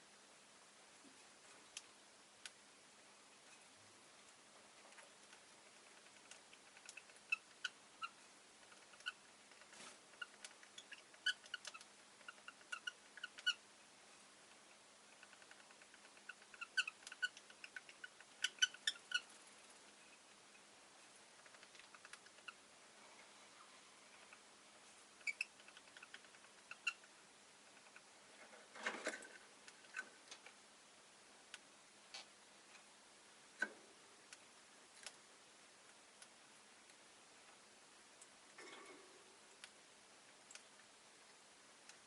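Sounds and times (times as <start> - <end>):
bird chirping: 16.1 - 19.4, 25.2 - 27.1.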